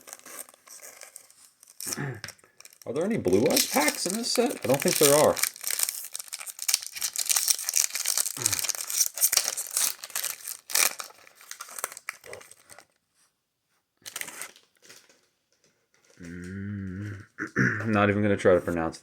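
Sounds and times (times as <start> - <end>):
foil wrapper crinkling and tearing: 0.0 - 13.0, 14.0 - 15.3.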